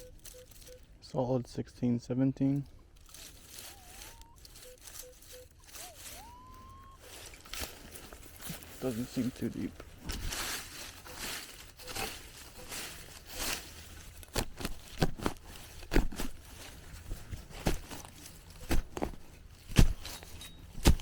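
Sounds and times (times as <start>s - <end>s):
digging tool chopping ground: 10.0s - 21.0s.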